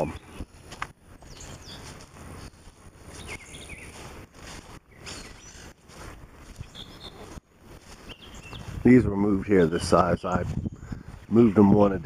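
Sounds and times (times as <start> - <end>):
bird chirps: 0.0 - 5.8, 6.5 - 8.8
low rumble on microphone: 0.0 - 12.0.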